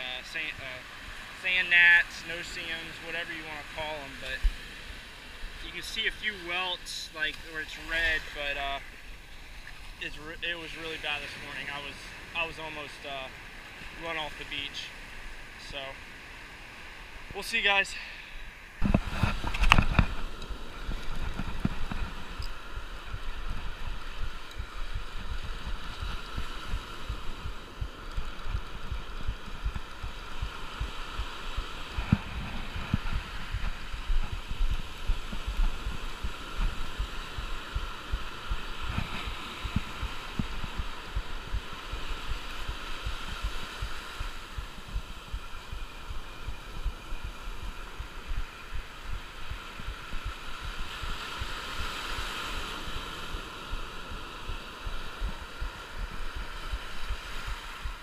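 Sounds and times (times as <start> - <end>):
surf hiss: 0.0 - 58.0
microphone buffeting thumps: 18.8 - 51.6.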